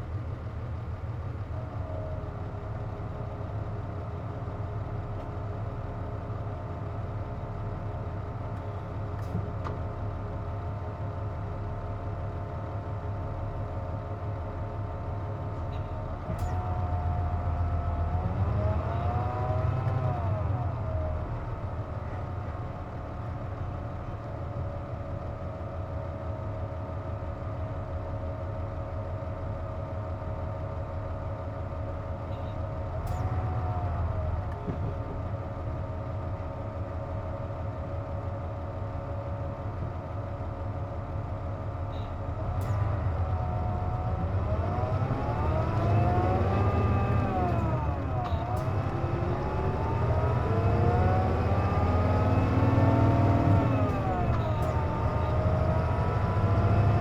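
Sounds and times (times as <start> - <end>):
bus engine rumble: 0.0 - 57.0
whining tone: 42.0 - 57.0.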